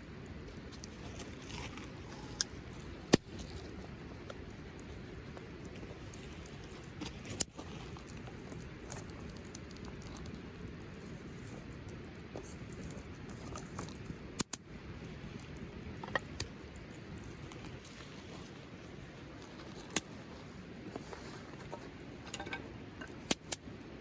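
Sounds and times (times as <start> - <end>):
steady low rumble: 0.0 - 24.0
small ticks: 0.5 - 18.0
sharp snaps: 14.4 - 14.6.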